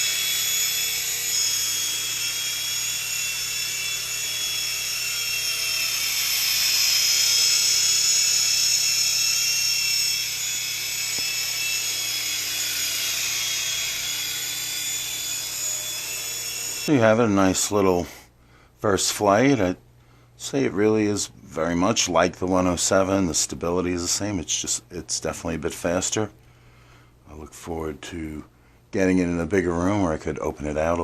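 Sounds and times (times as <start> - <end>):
toy helicopter rotor whine: 0.0 - 16.9.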